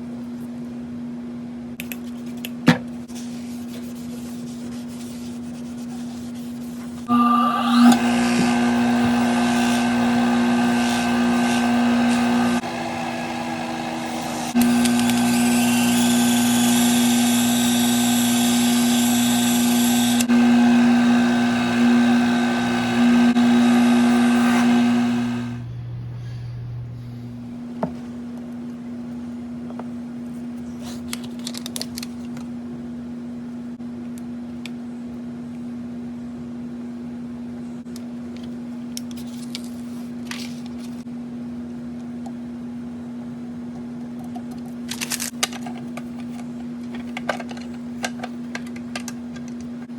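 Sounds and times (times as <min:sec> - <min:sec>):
disc sander motor humming: 0:07.1 - 0:25.7.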